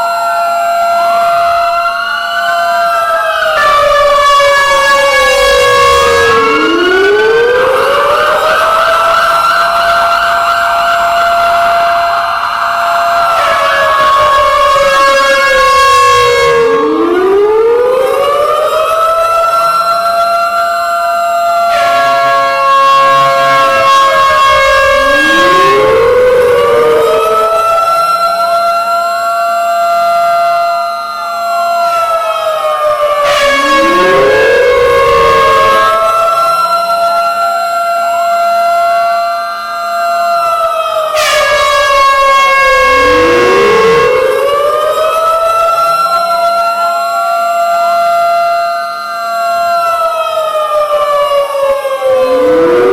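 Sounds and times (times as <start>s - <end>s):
sirens wailing: 0.0s - 52.9s
horn blast: 4.6s - 8.6s, 13.2s - 18.5s, 21.7s - 27.6s, 33.2s - 36.2s, 41.2s - 45.5s
steady many-toned sound: 42.8s - 45.2s.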